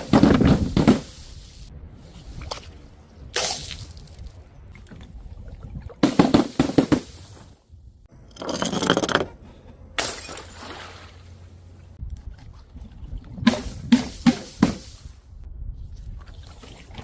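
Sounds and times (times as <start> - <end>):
glass bottles smashing: 10.0 - 11.1.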